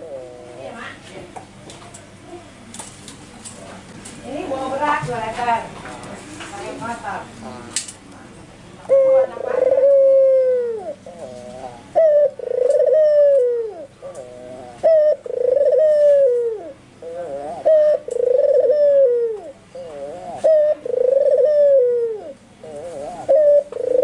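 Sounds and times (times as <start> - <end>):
dove cooing: 0.0 - 1.0, 8.9 - 24.0.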